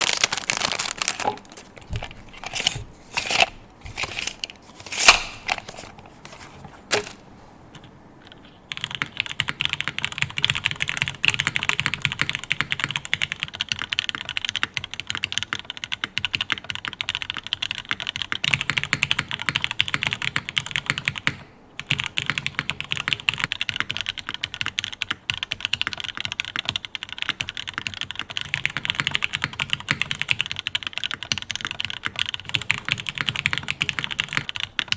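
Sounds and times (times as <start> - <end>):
mechanical keyboard typing: 7.8 - 34.9.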